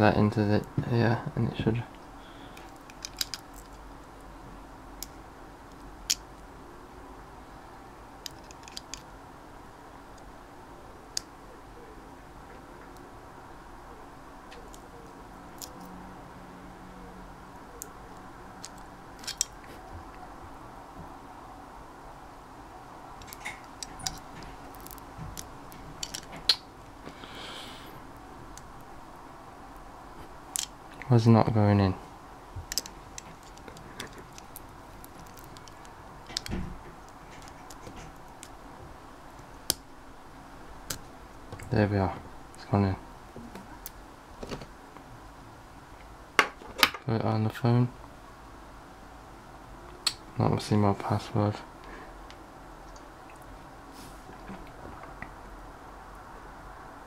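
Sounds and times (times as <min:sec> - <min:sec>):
faint room hiss: 0:00.0 - 0:57.0
soft rustle: 0:53.9 - 0:54.9.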